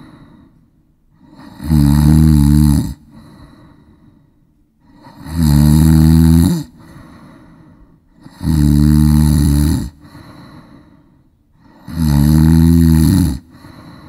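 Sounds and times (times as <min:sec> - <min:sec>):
soft breathing: 0:00.0 - 0:01.6, 0:03.0 - 0:05.2, 0:06.7 - 0:08.4, 0:09.9 - 0:11.9, 0:13.4 - 0:14.0
person snoring: 0:01.2 - 0:03.8, 0:04.8 - 0:11.0, 0:11.6 - 0:14.0.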